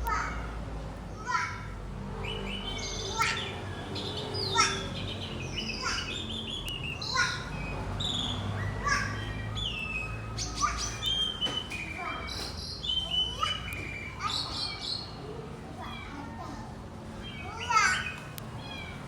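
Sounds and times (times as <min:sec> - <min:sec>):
songbirds chirping and singing: 0:00.0 - 0:19.0.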